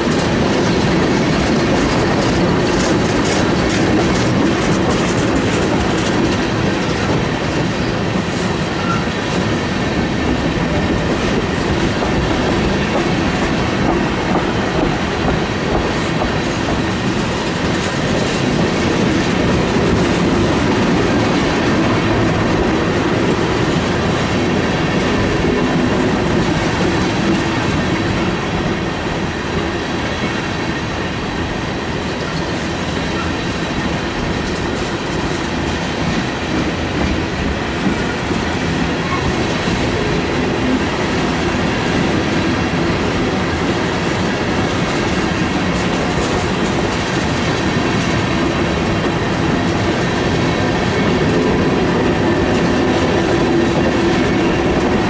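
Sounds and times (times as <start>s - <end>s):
train clicks and clatter: 0.0s - 55.0s
train wheels rumbling on rail: 0.0s - 55.0s
faint wheel squeal: 8.8s - 9.1s.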